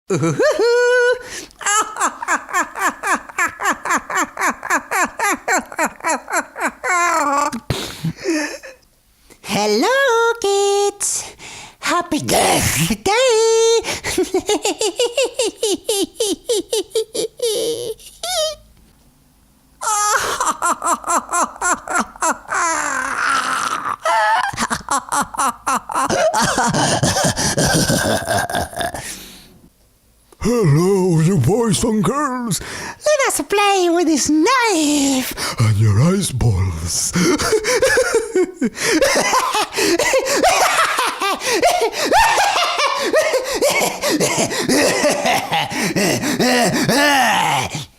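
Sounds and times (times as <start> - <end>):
man cackling laughter: 0.1 - 8.8, 14.1 - 18.6, 19.8 - 29.0, 37.2 - 47.8
man giggling maniacally: 0.1 - 8.8, 14.0 - 18.6, 19.8 - 29.2, 37.1 - 47.9.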